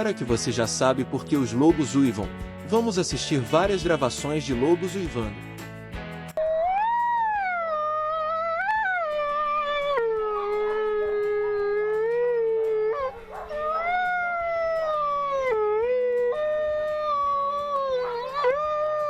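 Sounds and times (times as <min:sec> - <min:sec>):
wolf howling: 0:06.5 - 0:19.0.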